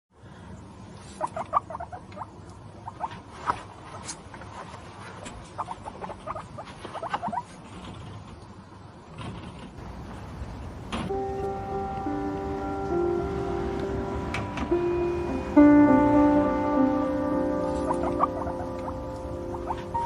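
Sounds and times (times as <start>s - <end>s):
low background noise: 0.1s - 20.0s
guinea pig squeaking: 1.1s - 4.2s, 5.2s - 7.7s, 17.8s - 20.0s.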